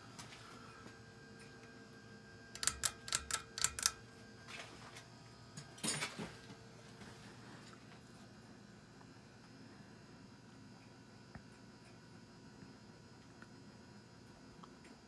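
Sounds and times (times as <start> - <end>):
ceiling fan humming: 0.0 - 15.0
sharp clicks: 2.6 - 4.0.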